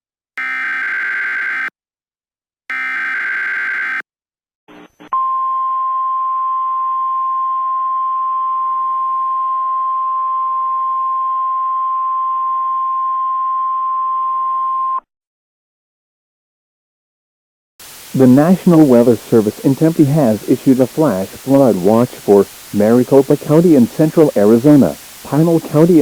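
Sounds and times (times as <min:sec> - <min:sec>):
radio hiss: 0:17.8 - 0:26.0.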